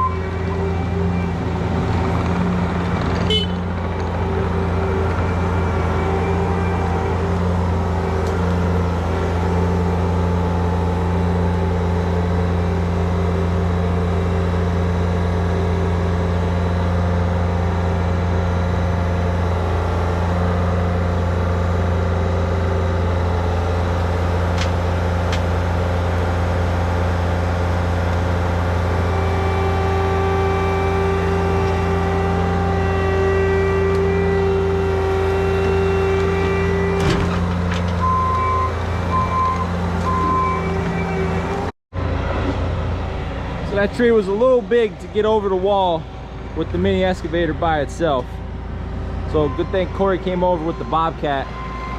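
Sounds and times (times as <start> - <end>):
diesel engines running under load: 0.0 - 51.9
steady whine: 23.9 - 51.9.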